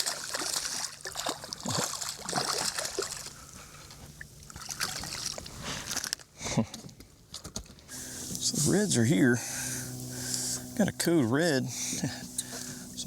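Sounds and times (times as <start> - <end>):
fish splashing at the surface: 0.0 - 3.4, 4.5 - 6.2
water splashing and sloshing: 0.0 - 6.3.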